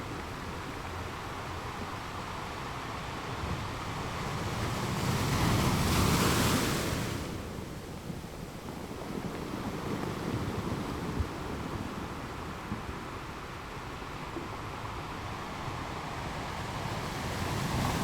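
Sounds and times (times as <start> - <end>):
waves crashing on rocky shore: 3.8 - 14.0.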